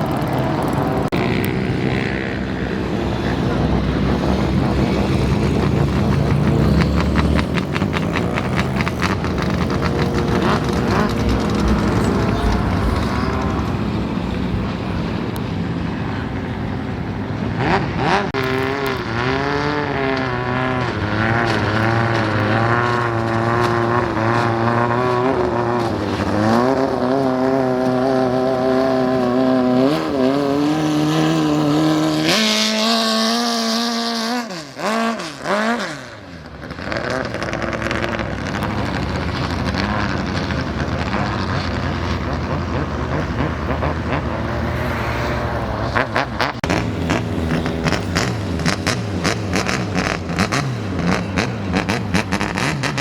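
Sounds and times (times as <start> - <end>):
boat passing by: 0.0 - 18.8, 38.3 - 52.9
speedboat engines running hard: 0.0 - 18.8.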